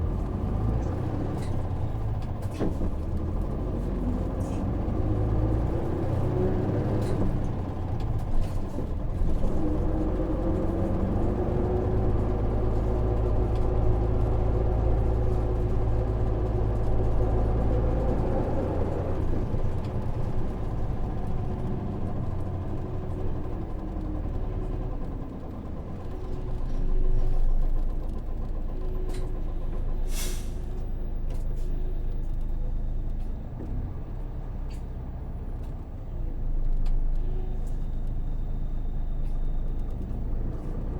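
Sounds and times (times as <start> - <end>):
bus diesel engine: 0.0 - 40.9.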